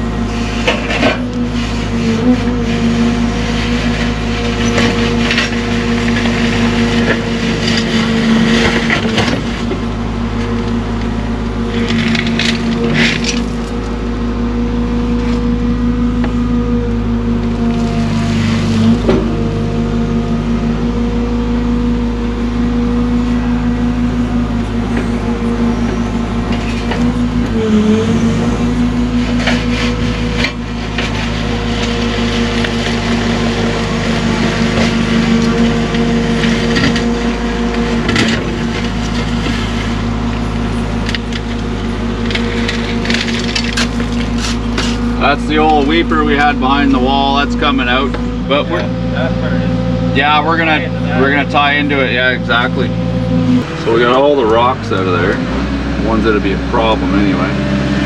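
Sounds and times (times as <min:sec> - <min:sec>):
excavator engine running: 0:00.0 - 0:58.0
bucket scraping soil and rock: 0:00.3 - 0:09.7.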